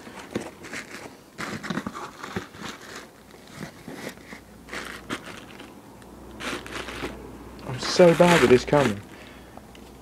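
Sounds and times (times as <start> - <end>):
packing rustling and crinkling: 0.0 - 5.8, 6.4 - 9.2
cardboard box being opened: 0.2 - 5.7.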